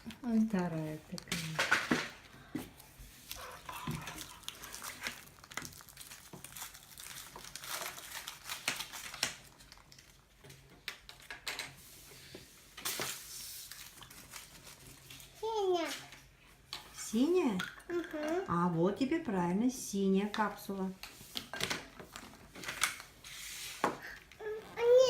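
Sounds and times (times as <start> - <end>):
wrappers rustling and crinkling: 0.0 - 16.2, 20.1 - 25.0.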